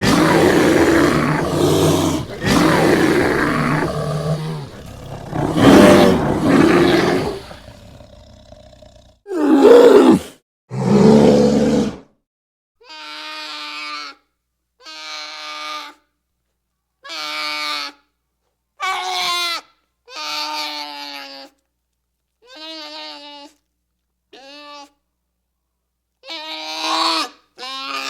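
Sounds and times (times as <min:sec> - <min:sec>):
bear growling and roaring: 0:00.0 - 0:12.1.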